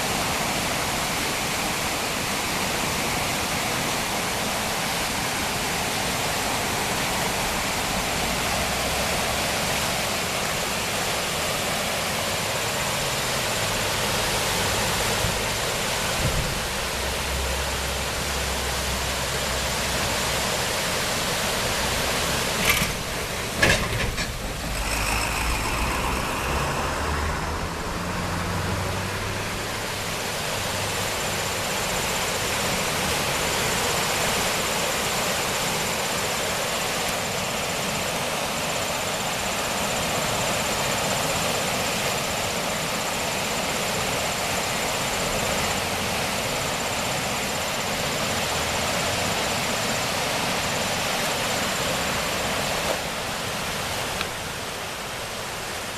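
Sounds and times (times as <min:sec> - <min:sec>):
river water rushing: 0:00.0 - 0:55.9
vehicle engine humming: 0:13.0 - 0:32.4.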